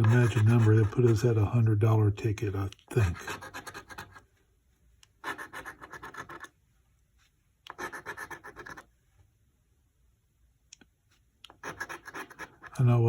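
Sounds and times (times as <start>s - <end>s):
lottery ticket being scratched: 0.0s - 1.5s, 3.0s - 4.2s, 5.2s - 6.5s, 7.7s - 8.9s, 11.5s - 12.8s.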